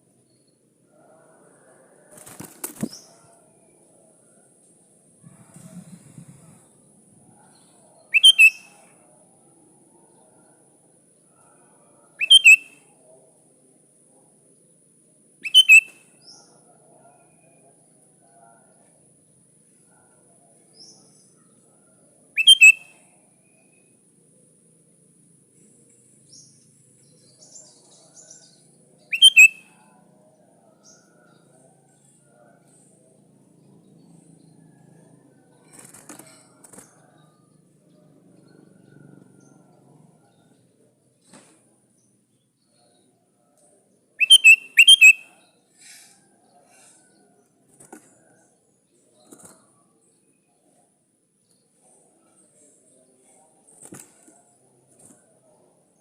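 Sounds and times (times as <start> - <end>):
soft high bird chirps: 4.3 - 9.2, 11.2 - 13.2, 15.4 - 17.6, 20.6 - 24.0, 25.9 - 30.0, 42.0 - 47.5
loud bird call: 8.1 - 8.8, 12.2 - 12.7, 15.4 - 16.0, 22.4 - 22.9, 29.1 - 29.7, 44.2 - 46.0.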